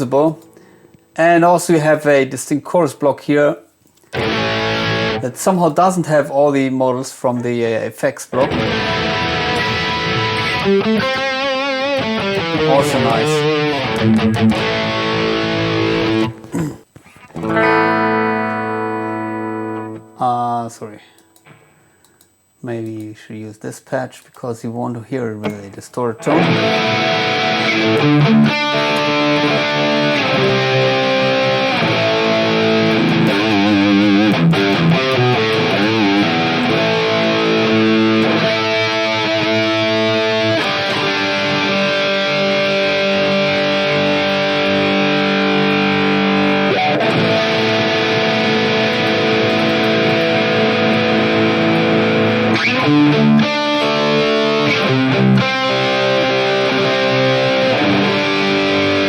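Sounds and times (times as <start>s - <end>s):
distorted electric guitar: 4.1s - 5.3s, 8.3s - 20.4s, 25.4s - 59.0s.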